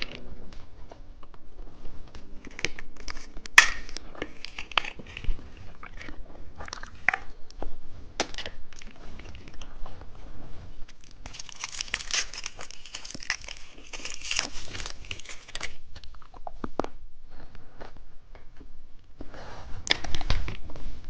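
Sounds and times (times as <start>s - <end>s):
candy chewing and crunching: 2.4s - 7.5s, 8.2s - 9.8s, 10.9s - 18.6s.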